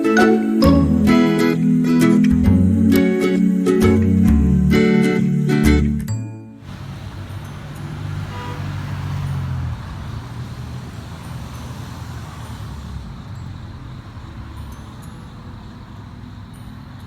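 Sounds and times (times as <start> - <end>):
road traffic rumble: 0.0 - 17.0.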